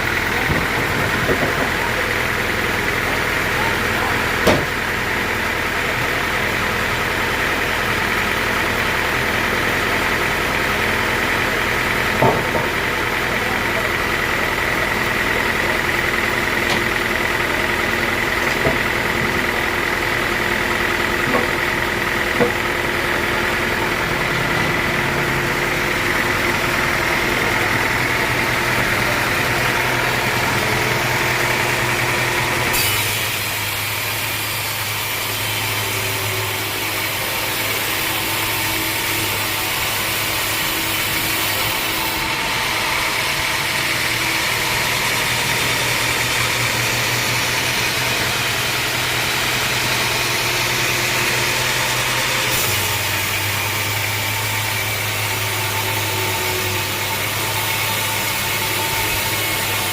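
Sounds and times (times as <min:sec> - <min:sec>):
band sawmill whining: 0:00.0 - 0:59.9
sharp knocks: 0:04.4 - 0:04.8, 0:12.2 - 0:12.8.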